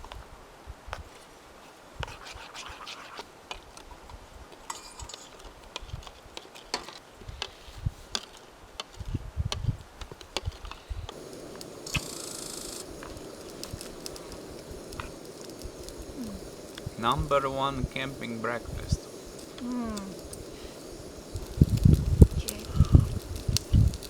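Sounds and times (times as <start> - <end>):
camp gear clicks and taps: 4.6 - 11.3
steady hiss: 10.9 - 24.0.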